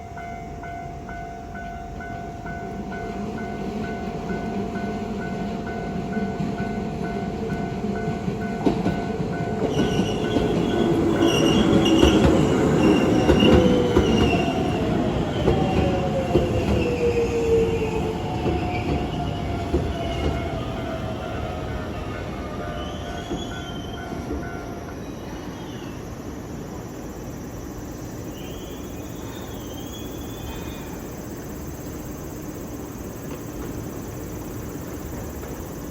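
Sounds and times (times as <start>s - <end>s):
crossing bell ringing: 0.0s - 15.0s
electric train passing: 0.0s - 35.9s.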